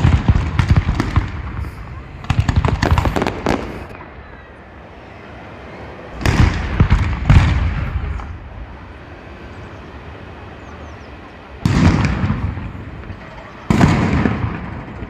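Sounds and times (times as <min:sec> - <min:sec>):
fireworks bangs: 0:00.0 - 0:04.4, 0:06.1 - 0:08.8, 0:11.5 - 0:15.0.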